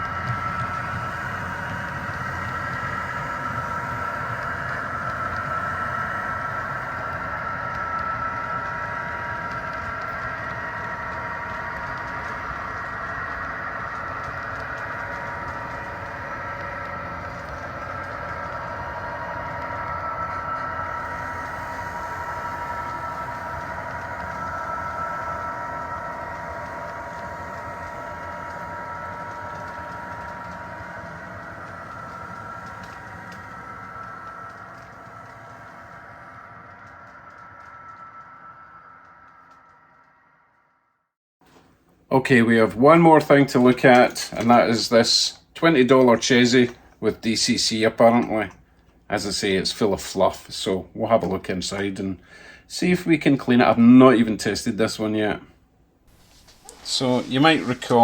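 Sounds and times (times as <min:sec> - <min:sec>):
small motor whine: 0:00.0 - 0:40.8, 0:56.1 - 0:58.0
wheels rumbling on rail: 0:00.0 - 0:40.8, 0:41.4 - 0:58.0.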